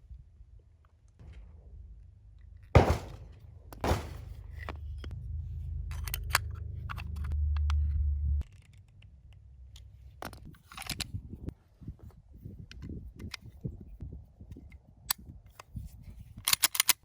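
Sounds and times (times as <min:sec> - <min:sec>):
small clicks and handling sounds: 0:14.7 - 0:17.0.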